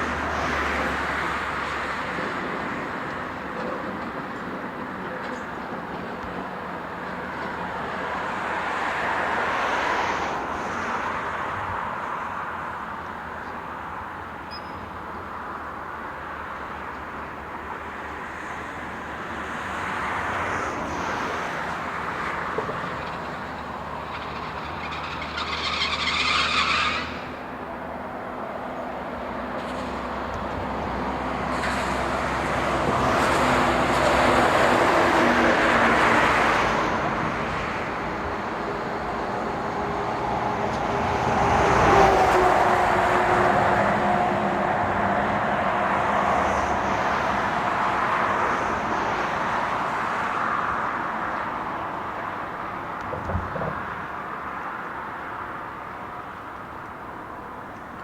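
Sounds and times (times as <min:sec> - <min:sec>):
heavy vehicles passing: 0:00.0 - 0:58.0
high-pitched squeal: 0:23.8 - 0:27.6.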